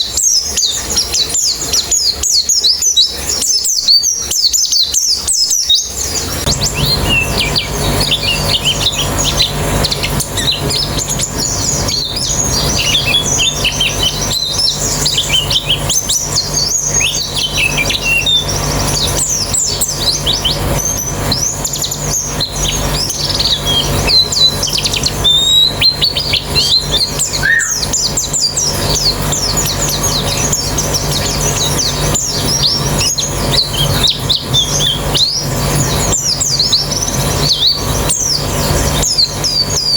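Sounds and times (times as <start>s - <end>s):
birds chirping and trilling: 0.0s - 39.9s
steady low hum: 0.0s - 39.9s.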